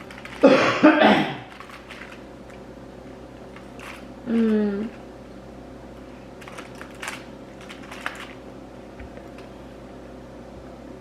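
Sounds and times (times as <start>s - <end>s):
cardboard and foil crinkling: 0.0s - 0.6s, 1.4s - 2.3s, 3.5s - 4.7s, 6.4s - 8.4s.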